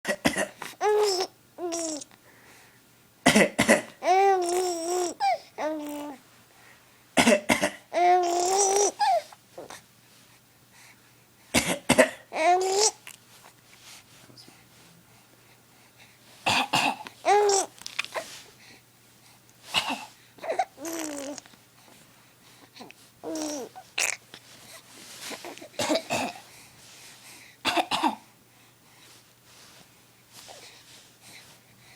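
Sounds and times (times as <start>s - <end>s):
person coughing: 0.1s - 0.6s, 3.2s - 4.0s, 7.2s - 7.9s, 11.5s - 12.3s, 16.5s - 17.1s, 19.7s - 20.1s, 25.8s - 26.4s, 27.6s - 28.2s
baby giggling and babbling: 0.8s - 2.1s, 4.0s - 6.2s, 7.9s - 9.7s, 12.3s - 13.1s, 17.2s - 18.3s, 20.4s - 21.5s, 23.2s - 24.2s.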